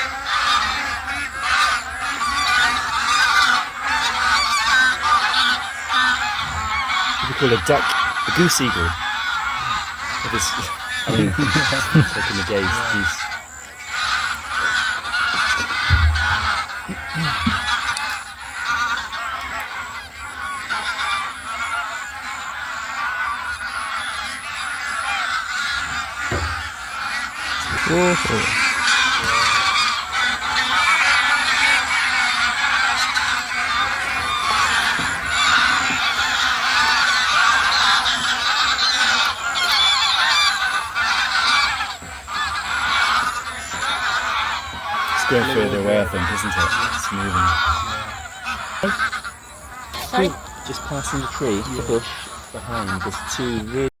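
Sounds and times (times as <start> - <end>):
geese honking: 0.0 - 53.9
low bump: 15.8 - 17.7.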